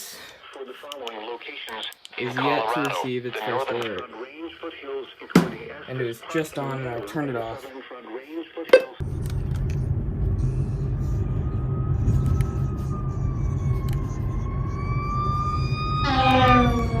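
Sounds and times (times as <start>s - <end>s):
loud steady rumble: 9.0s - 14.9s
siren wailing: 10.8s - 17.0s.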